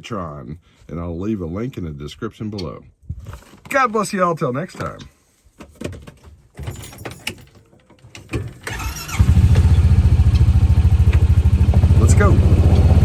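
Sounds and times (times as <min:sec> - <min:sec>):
engine cranking and idling: 0:08.5 - 0:13.0.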